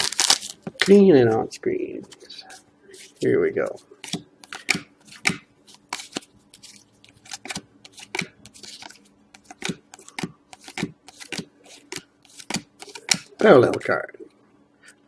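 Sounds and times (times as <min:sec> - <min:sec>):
card packs being opened: 0:00.0 - 0:01.0.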